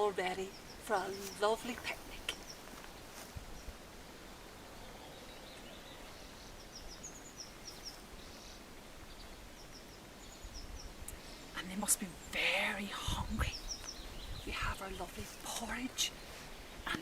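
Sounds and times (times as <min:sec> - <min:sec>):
small bird chirping: 0:00.0 - 0:03.8, 0:04.7 - 0:17.0
faint outdoor hiss: 0:00.0 - 0:17.0.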